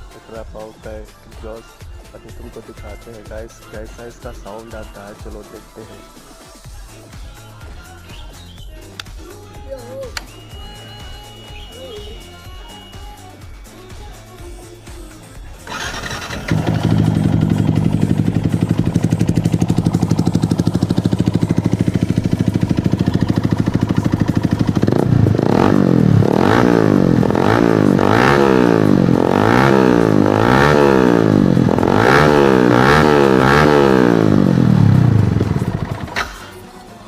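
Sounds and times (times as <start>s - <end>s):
motorcycle engine idling and revving: 15.2s - 36.9s.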